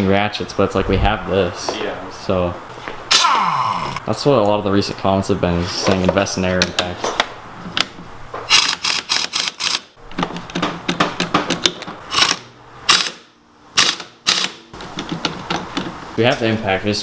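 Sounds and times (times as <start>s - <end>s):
air impact wrench hammering: 8.5s - 9.9s, 12.1s - 14.7s.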